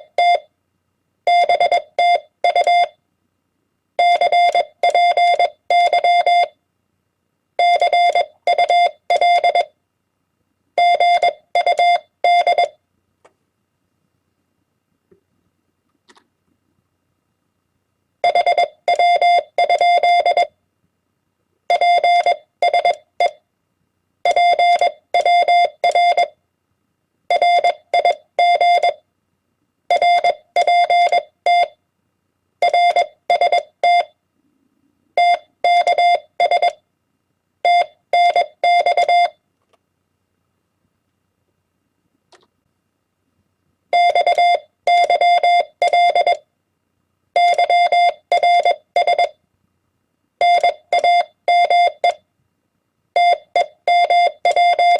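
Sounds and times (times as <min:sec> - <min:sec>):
morse code beeping tone: 0:37.7 - 0:39.4, 0:44.0 - 0:46.4, 0:47.4 - 0:49.3, 0:50.4 - 0:52.2, 0:53.2 - 0:54.9.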